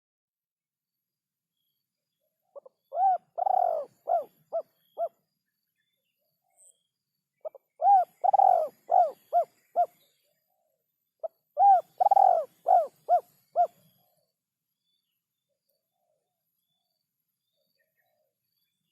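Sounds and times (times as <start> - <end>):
dove cooing: 2.5 - 5.2, 7.4 - 10.1, 11.3 - 13.8.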